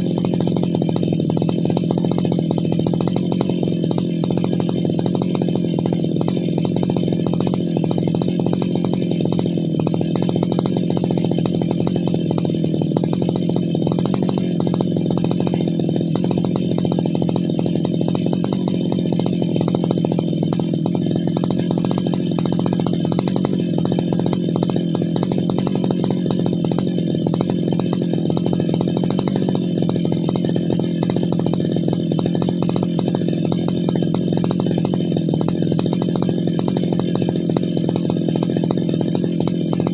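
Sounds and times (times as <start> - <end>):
brush cutter engine running: 0.0 - 39.9.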